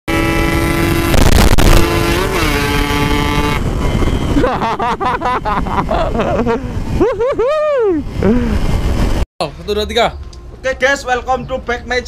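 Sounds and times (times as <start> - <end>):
two-stroke motorcycle engine revving: 0.1 - 4.2.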